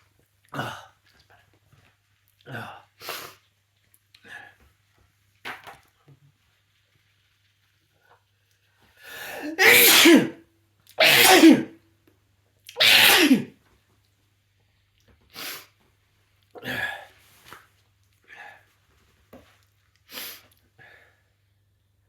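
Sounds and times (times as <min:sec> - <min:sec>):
person sneezing: 0:09.3 - 0:10.4, 0:11.0 - 0:11.7, 0:12.7 - 0:13.5.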